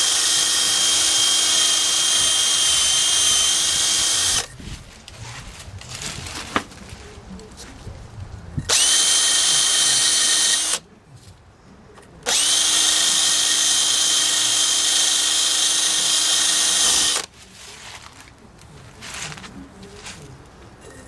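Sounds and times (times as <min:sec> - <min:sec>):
power tool spinning: 0:00.0 - 0:04.6, 0:08.7 - 0:10.8, 0:12.2 - 0:17.3.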